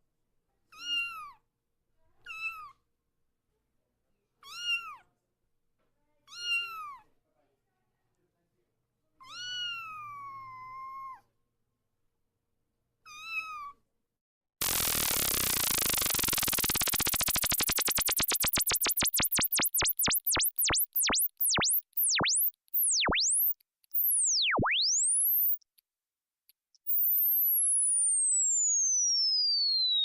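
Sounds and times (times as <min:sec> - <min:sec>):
electronic ringtone swooping in pitch: 0:14.6 - 0:25.6, 0:26.8 - 0:30.0
electronic tone gliding downward: 0:14.6 - 0:25.6, 0:26.8 - 0:30.0.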